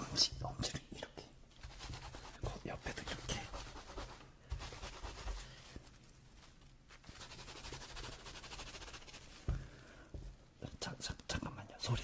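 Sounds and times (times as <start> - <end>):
fingers scrubbing lathered hair: 7.1 - 9.3.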